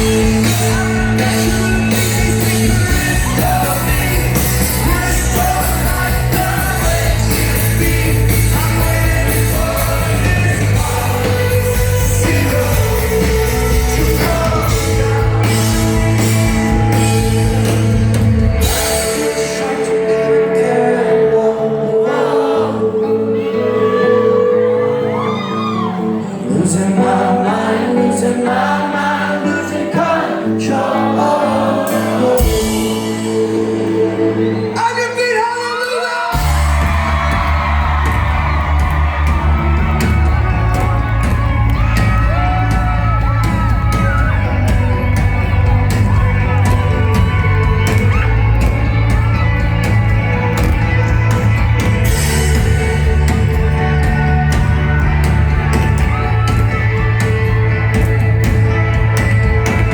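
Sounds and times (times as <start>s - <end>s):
steady drum beat: 0.0s - 19.6s, 36.3s - 59.9s
heavy bass: 0.0s - 20.7s, 36.3s - 59.9s
crowd shouting and whooping: 0.0s - 59.9s
lead vocal singing: 0.0s - 59.9s
live rock band playing: 0.0s - 59.9s.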